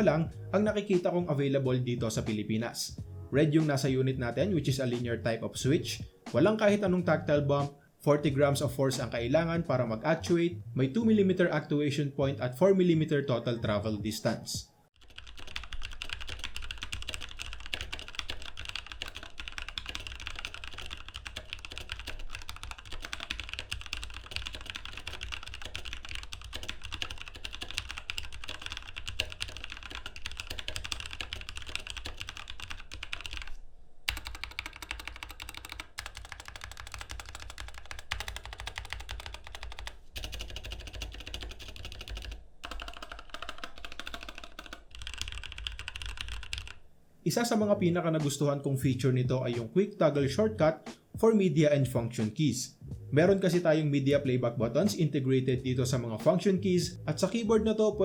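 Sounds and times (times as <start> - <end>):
mechanical keyboard typing: 15.0 - 33.5, 34.1 - 46.8.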